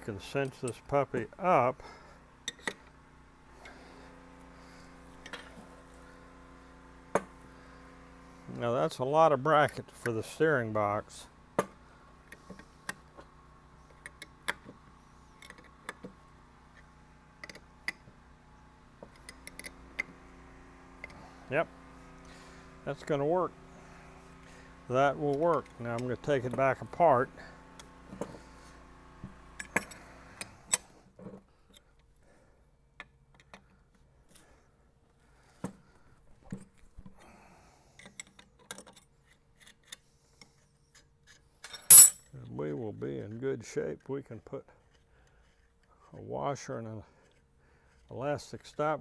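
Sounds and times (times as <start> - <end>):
metallic clicks of tools and parts: 2.5 - 2.8, 19.1 - 20.1, 38.0 - 42.3
metal clinks: 41.6 - 42.3.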